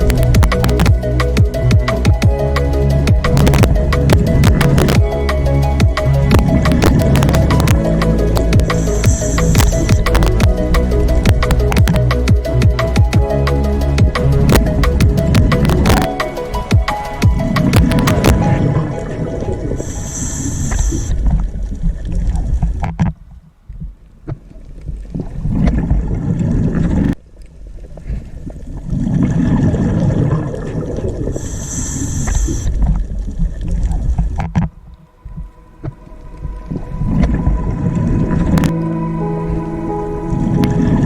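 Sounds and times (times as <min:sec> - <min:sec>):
sea water surging: 0:00.0 - 0:22.7, 0:34.9 - 0:41.0.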